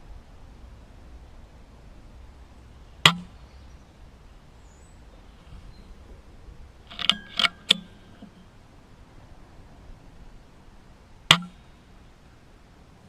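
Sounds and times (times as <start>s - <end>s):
silenced air rifle shot: 3.1s - 3.3s, 11.3s - 11.7s
metallic clicks of rifle lever: 6.9s - 8.5s.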